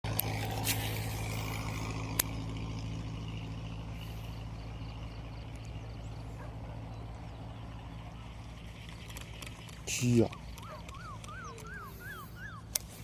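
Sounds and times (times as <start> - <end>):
motor humming: 0.0 - 13.0
sharp clicks: 2.0 - 2.4, 8.8 - 11.8, 12.6 - 13.0.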